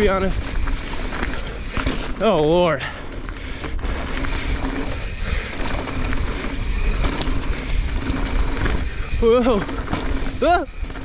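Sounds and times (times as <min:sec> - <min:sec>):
tyres rumbling over dirt: 0:00.0 - 0:11.0
wind buffeting microphone: 0:00.0 - 0:11.0
buzzing hum: 0:03.2 - 0:11.0.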